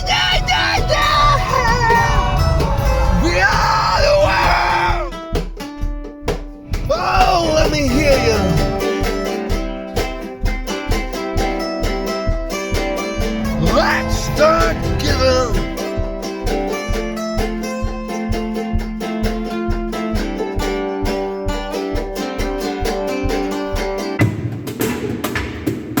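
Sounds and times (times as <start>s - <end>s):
noisy wash: 0.0s - 5.0s, 12.8s - 16.1s
gliding vocal line: 0.0s - 5.2s, 6.7s - 8.9s, 13.1s - 15.8s
plucked-string tune over beat: 5.1s - 24.3s.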